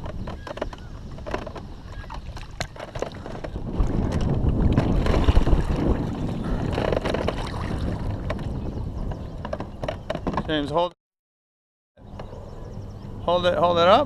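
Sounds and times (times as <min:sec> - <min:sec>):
wind buffeting microphone: 0:00.0 - 0:10.9
small knocks: 0:09.1 - 0:10.6.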